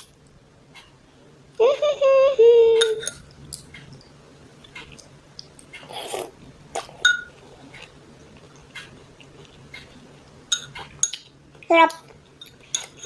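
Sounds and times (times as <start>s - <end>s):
noisy mouth sound: 5.8s - 7.9s.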